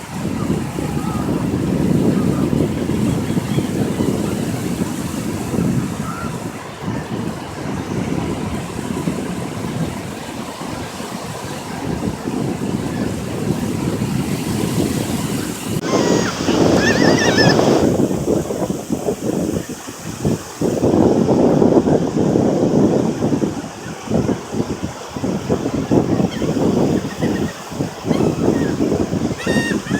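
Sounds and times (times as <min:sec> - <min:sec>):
surf washing: 0:00.0 - 0:29.9
wind buffeting microphone: 0:00.0 - 0:29.9
bird calling: 0:15.8 - 0:17.9, 0:26.2 - 0:29.9.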